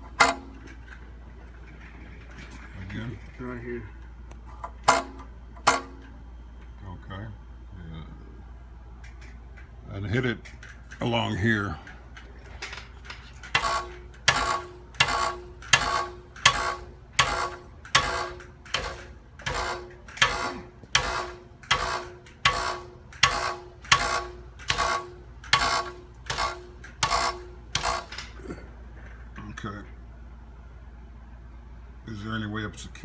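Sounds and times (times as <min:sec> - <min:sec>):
metal heat shield tapped rattling: 0:00.0 - 0:00.8, 0:04.7 - 0:06.1, 0:12.6 - 0:28.6.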